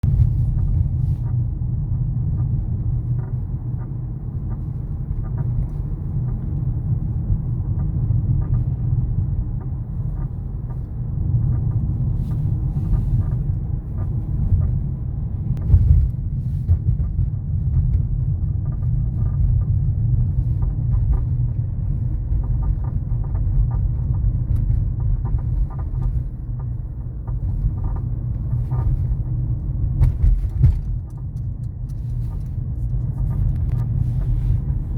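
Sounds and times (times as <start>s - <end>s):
car driving low rumble: 0.0s - 34.9s.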